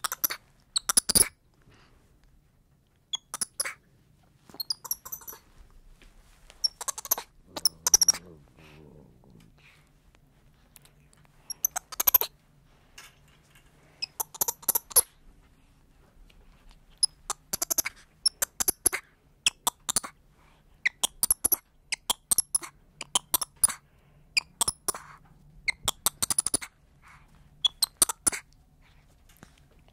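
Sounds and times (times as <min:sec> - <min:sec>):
monkey squeaking: 0:00.0 - 0:01.4, 0:03.1 - 0:03.8, 0:04.5 - 0:05.4, 0:06.6 - 0:08.2, 0:11.5 - 0:12.3, 0:14.0 - 0:15.1, 0:17.0 - 0:20.1, 0:20.8 - 0:23.8, 0:24.4 - 0:26.7, 0:27.6 - 0:28.5.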